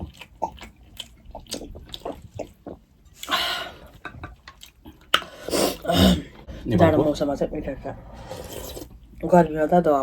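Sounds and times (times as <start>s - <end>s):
wet chewing and lip smacks: 0.0s - 5.4s.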